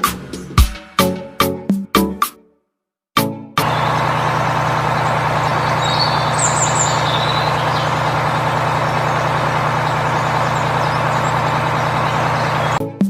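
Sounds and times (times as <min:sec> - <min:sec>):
faint high chirps: 0:03.6 - 0:12.8
truck engine running: 0:03.6 - 0:12.8.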